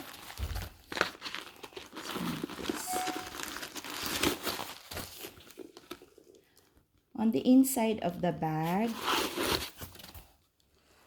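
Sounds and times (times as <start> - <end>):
packing material crinkling: 0.0 - 6.4.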